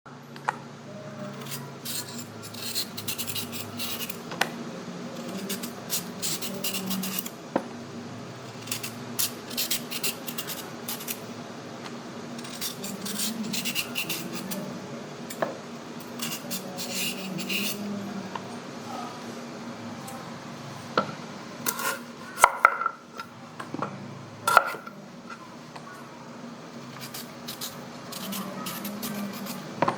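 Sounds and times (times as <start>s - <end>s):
peeler scraping carrot: 1.2s - 4.2s, 5.2s - 7.3s, 8.5s - 11.2s, 12.4s - 14.7s, 16.0s - 17.9s, 21.7s - 22.4s, 26.9s - 29.8s.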